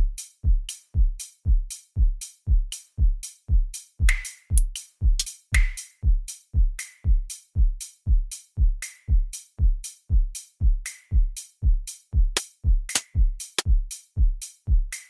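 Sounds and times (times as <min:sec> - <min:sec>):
kick drum beat: 0:00.0 - 0:15.0.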